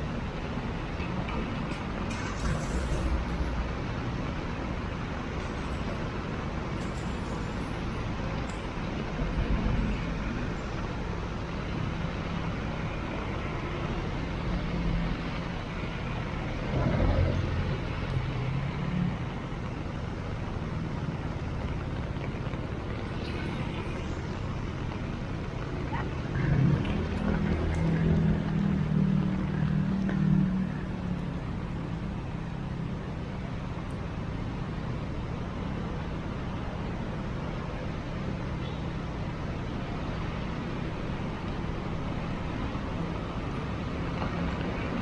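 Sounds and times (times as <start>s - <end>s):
passing cars rumbling: 0.0s - 45.0s
heavy rain hissing: 17.4s - 31.1s.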